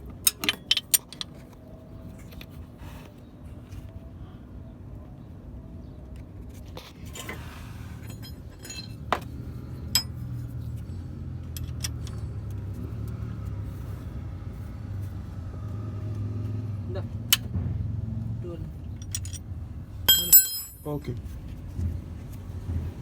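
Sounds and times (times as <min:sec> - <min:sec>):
metal tools clinking: 0:08.0 - 0:10.4, 0:19.0 - 0:19.5, 0:20.1 - 0:21.1.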